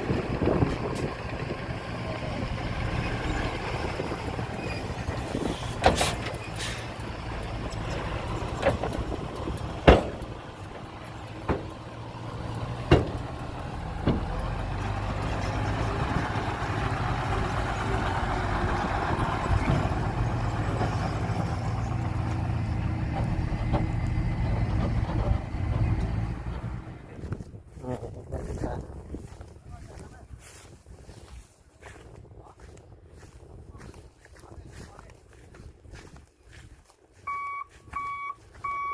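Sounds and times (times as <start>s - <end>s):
heavy diesel engine running: 0.0s - 30.6s.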